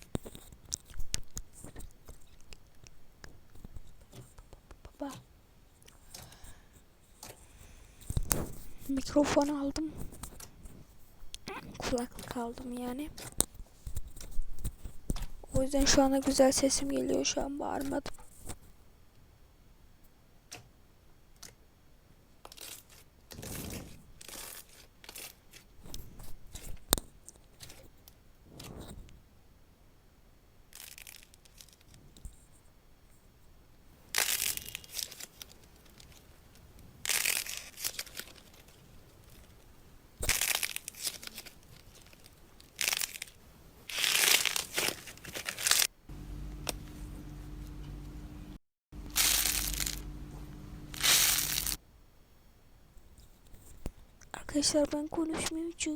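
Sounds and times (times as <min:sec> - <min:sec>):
slime crackling and tearing: 0:34.1 - 0:36.2, 0:37.0 - 0:38.8, 0:40.2 - 0:45.9, 0:49.1 - 0:50.1, 0:50.9 - 0:51.8
steady low hum: 0:46.0 - 0:51.8.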